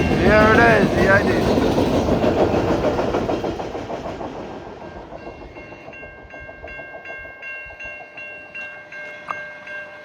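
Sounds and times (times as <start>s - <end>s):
crossing warning bell ringing: 0.0s - 2.2s, 4.8s - 10.0s
freight train wheels clattering: 0.0s - 9.8s.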